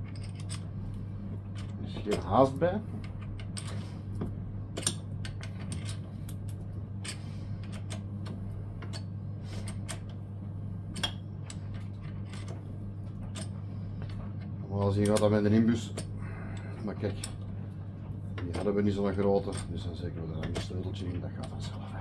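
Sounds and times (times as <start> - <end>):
steady low hum: 0.0 - 22.0
hand tools clicking on metal: 14.8 - 16.1.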